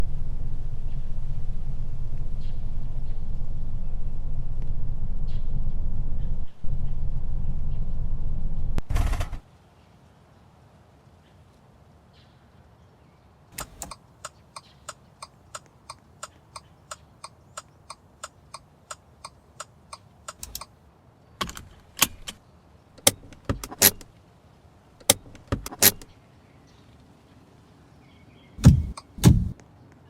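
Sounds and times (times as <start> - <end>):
clunks: 13.6 - 14.0, 20.3 - 20.7, 21.4 - 22.4, 23.0 - 24.1, 25.0 - 26.1, 28.6 - 29.6
sharp ticks: 13.6 - 20.7, 28.6 - 29.6.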